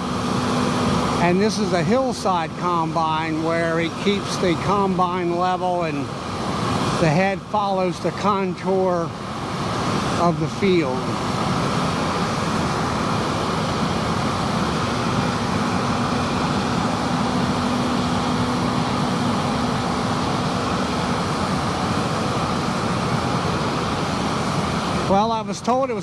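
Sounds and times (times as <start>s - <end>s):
combine harvester drone: 0.0s - 26.0s
steady hum: 0.0s - 26.0s.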